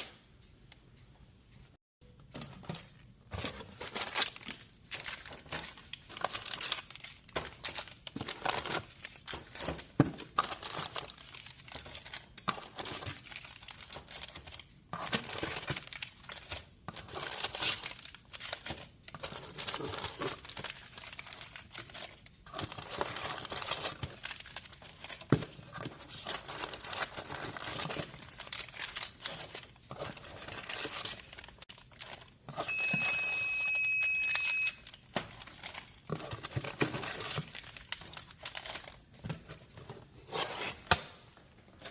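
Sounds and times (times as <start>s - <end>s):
plastic wrappers crackling: 3.6s - 9.7s, 10.3s - 25.3s, 25.9s - 32.5s, 34.8s - 39.1s
high electronic beep: 32.7s - 34.8s.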